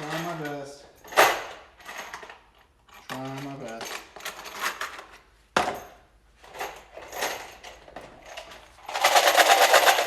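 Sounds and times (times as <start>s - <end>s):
metal screws rattling in plastic bin: 6.4s - 10.0s.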